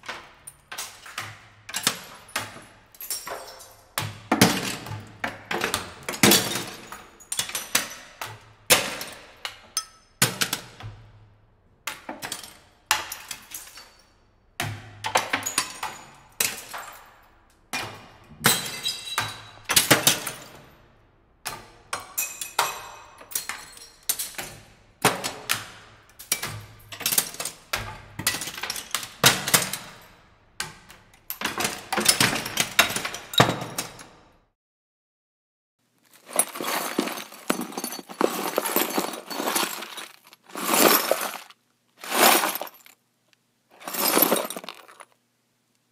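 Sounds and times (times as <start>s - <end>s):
glass shards tinkling: 3.0s - 3.9s, 18.5s - 19.5s, 22.2s - 24.2s, 36.1s - 43.0s, 43.8s - 45.1s
glass breaking and shattering: 5.7s - 8.0s, 18.5s - 20.5s, 36.2s - 42.9s, 43.8s - 45.1s.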